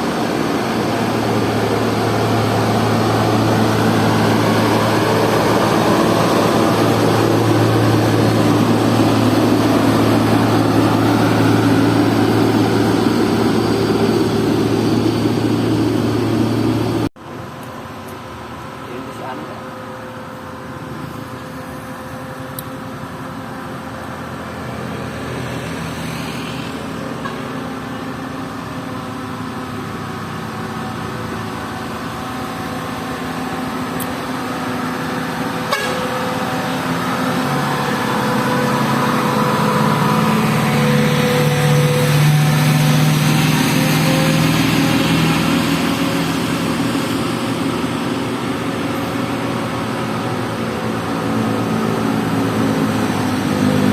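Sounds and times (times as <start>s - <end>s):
heavy vehicle engines labouring: 0.0s - 53.9s
horn honking: 35.6s - 36.6s.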